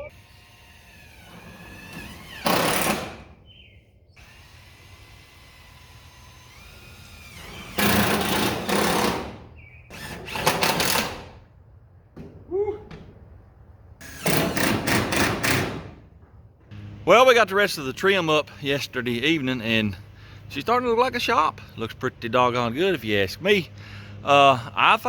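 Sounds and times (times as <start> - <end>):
power driver driving screws: 0.1 - 3.4, 4.2 - 11.3, 14.0 - 15.8.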